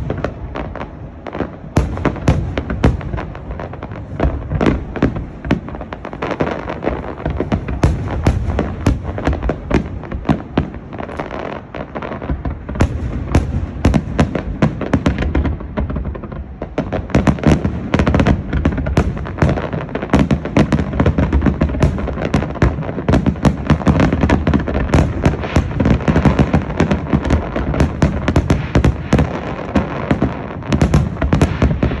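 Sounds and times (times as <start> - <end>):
fireworks bangs and crackles: 0.0 - 32.0.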